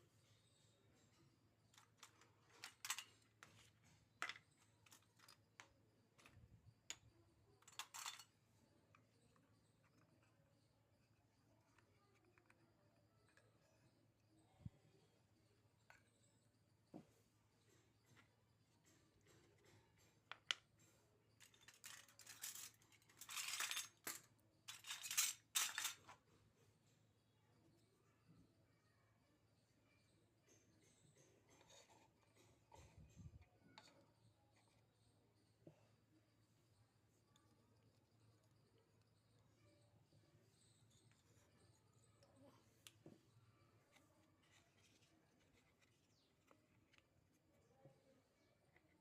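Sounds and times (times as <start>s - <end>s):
plastic toy pieces clicking: 1.8s - 8.3s, 19.2s - 26.2s.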